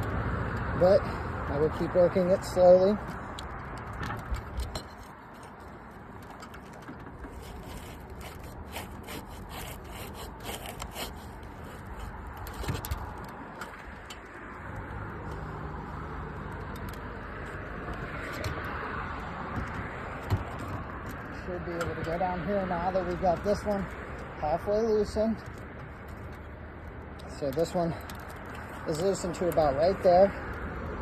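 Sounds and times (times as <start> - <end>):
roof shingles scraping: 4.9 - 14.0.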